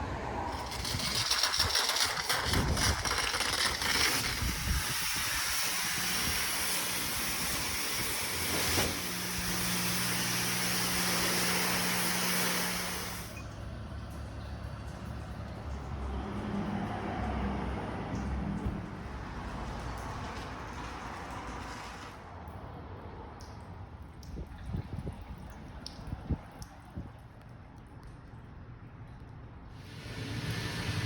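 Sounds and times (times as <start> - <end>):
water spray hissing: 0.5 - 13.4, 29.8 - 31.0.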